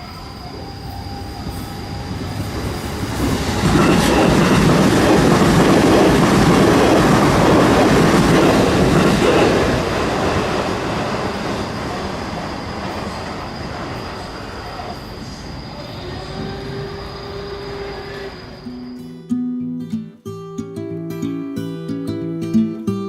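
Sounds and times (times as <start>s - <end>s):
train wheels clattering over rails: 1.2s - 18.4s.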